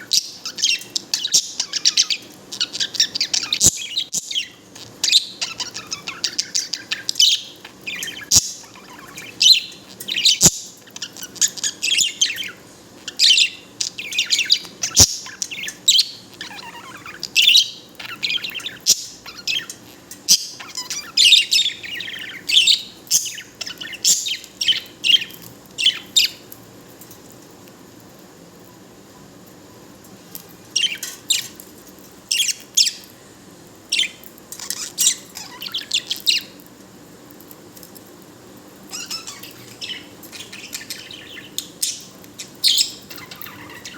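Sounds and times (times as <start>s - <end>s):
budgerigar warbling and chirping: 0.1s - 26.4s, 33.9s - 36.6s, 38.9s - 43.9s.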